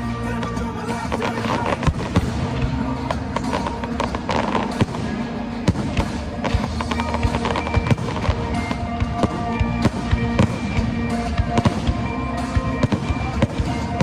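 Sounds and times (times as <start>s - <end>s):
music playing: 0.0s - 14.0s
fireworks bangs and crackles: 0.4s - 14.0s.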